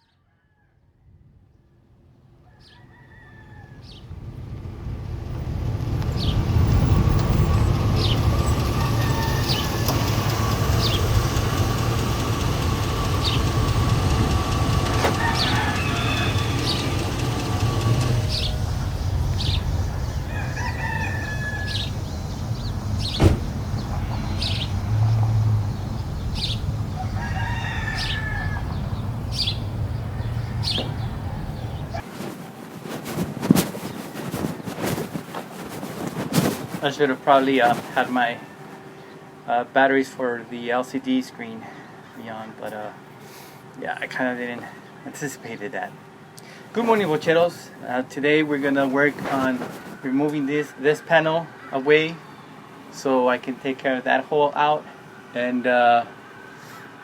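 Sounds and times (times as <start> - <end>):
roosters crowing: 2.4 - 32.4, 33.0 - 39.2, 46.8 - 52.8
small birds chirping: 2.5 - 39.2, 43.9 - 53.0
steady low rumble: 3.8 - 32.0.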